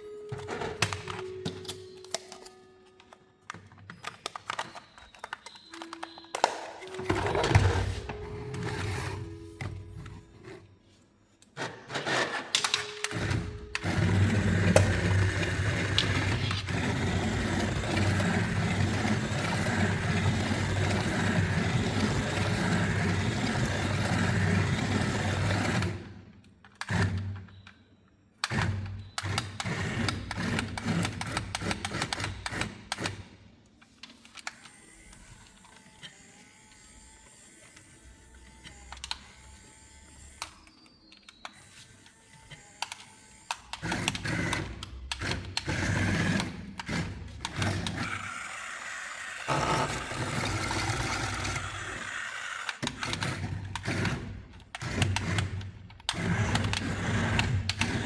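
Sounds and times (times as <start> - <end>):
clicks and clatter: 0.8 - 7.0
toy electric motor and gears: 11.5 - 26.1, 28.4 - 58.0.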